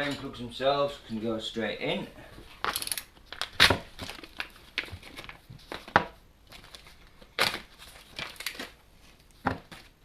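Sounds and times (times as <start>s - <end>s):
packaging crinkling: 2.5s - 10.0s.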